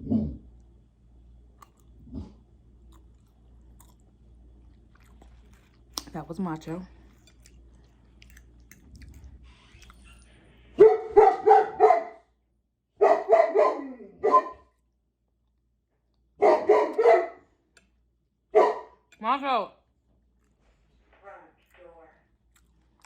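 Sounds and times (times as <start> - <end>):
dog barking loudly: 10.8 - 12.2, 13.0 - 14.7, 16.4 - 17.4, 18.6 - 19.0.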